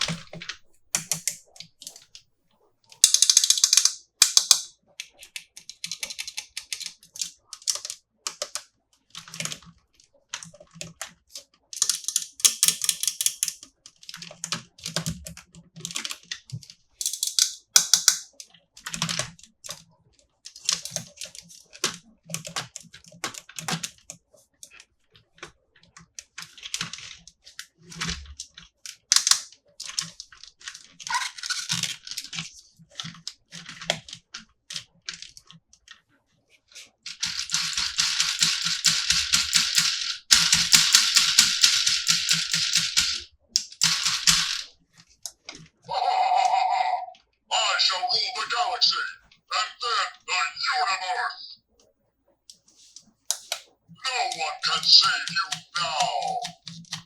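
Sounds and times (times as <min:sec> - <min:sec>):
plastic toys clicking and rustling: 0:00.0 - 0:02.2, 0:03.0 - 0:45.7.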